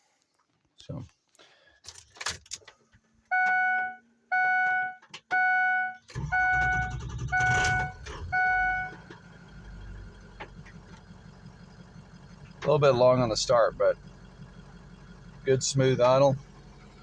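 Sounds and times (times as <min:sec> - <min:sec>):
diesel engine cranking and idling: 0:05.4 - 0:17.0.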